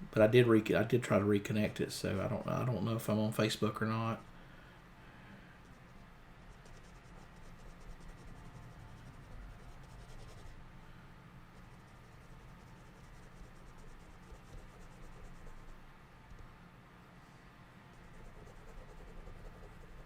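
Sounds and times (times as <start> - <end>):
low room hum: 0.0 - 20.0
pen scratching on paper: 5.6 - 10.6, 11.6 - 15.7, 17.9 - 20.0.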